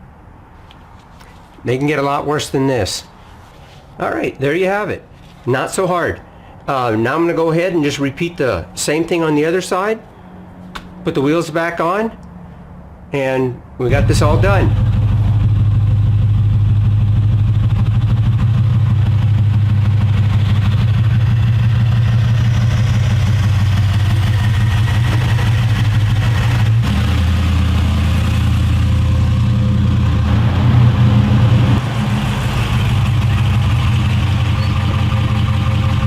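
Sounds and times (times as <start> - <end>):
car engine and road drone: 13.8 - 36.0.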